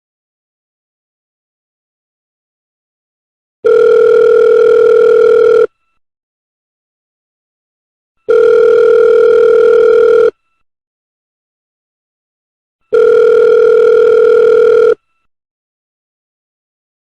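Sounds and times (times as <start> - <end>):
telephone ringback tone: 3.6 - 5.8, 8.2 - 10.6, 12.9 - 15.3.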